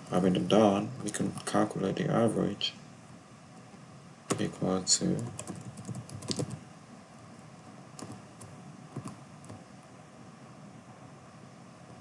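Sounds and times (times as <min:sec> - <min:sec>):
computer keyboard typing: 0:05.2 - 0:06.6, 0:08.0 - 0:09.6.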